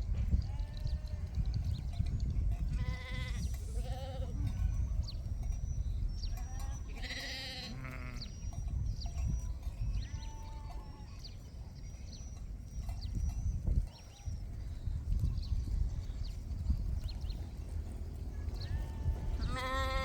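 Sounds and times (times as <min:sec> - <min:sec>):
sheep bleating: 0:02.8 - 0:04.6, 0:07.0 - 0:08.3, 0:18.6 - 0:20.0.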